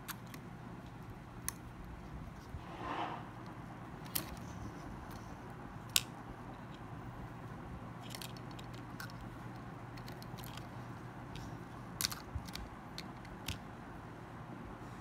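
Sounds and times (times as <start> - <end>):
steady low hum: 0.0 - 15.0
small plastic clicks and ticks: 8.0 - 13.7.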